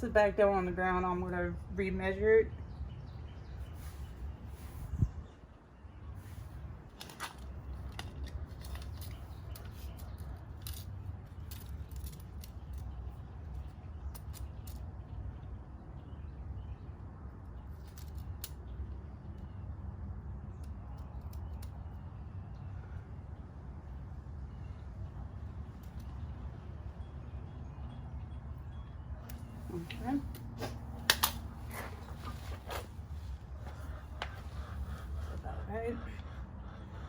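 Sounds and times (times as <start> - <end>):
light metallic clicks: 29.2 - 32.8.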